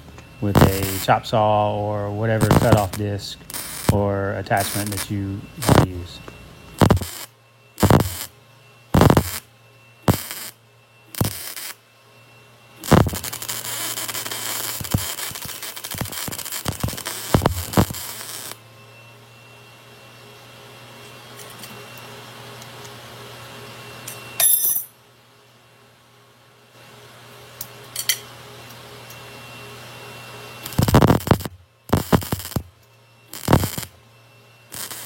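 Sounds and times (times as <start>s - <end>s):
low steady hum: 0.0s - 11.7s
continuous welding: 0.0s - 11.8s, 12.8s - 18.7s, 30.3s - 35.0s
welder tack welds: 0.4s - 6.2s, 6.8s - 8.3s, 9.0s - 11.8s, 12.8s - 18.6s, 30.6s - 34.0s, 34.7s - 35.0s.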